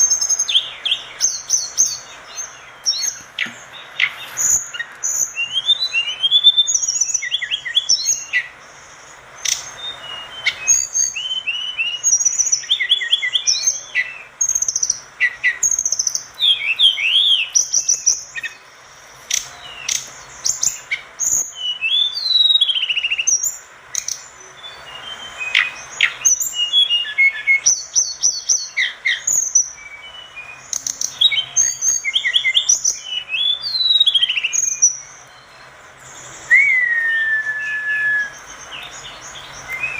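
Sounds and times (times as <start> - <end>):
bird singing whistled notes: 0.0 - 39.9.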